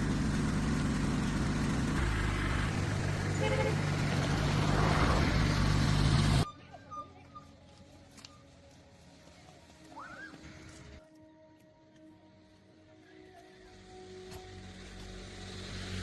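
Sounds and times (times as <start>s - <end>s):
vehicle engine running: 0.0s - 6.4s, 13.5s - 16.0s.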